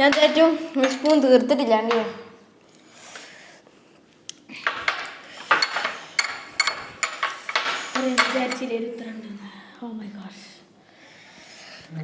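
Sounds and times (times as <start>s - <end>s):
metal spoon clinking on dish: 4.7s - 8.8s.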